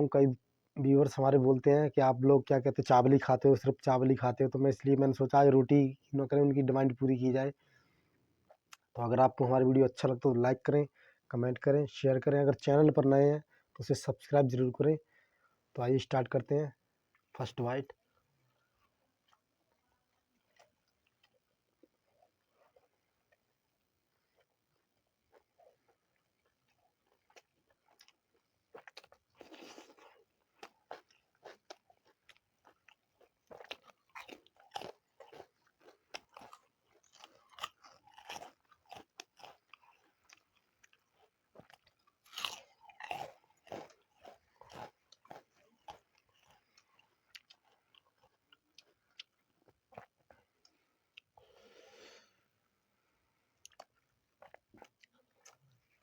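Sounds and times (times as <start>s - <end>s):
wet chewing: 18.5s - 23.4s, 24.3s - 51.4s, 53.6s - 56.0s
crisp crunching bites: 28.8s - 50.1s.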